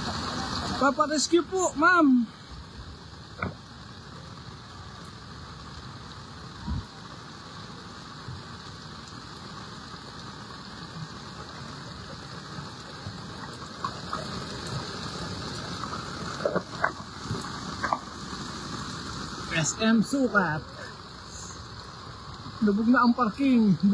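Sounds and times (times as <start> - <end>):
hiss of floodwater: 0.0 - 23.9.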